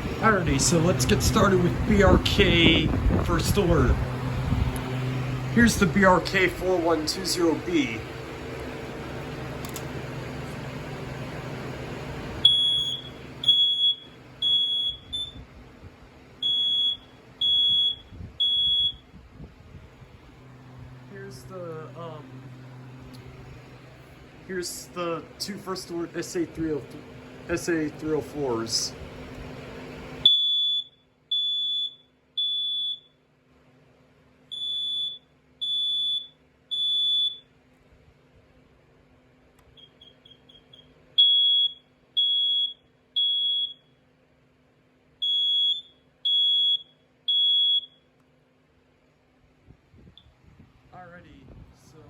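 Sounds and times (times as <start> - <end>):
steady background hum: 0.0 - 52.0
smoke alarm beeping: 12.4 - 15.5, 16.4 - 19.1, 30.2 - 33.2, 34.5 - 37.6, 39.7 - 44.0, 45.2 - 48.1.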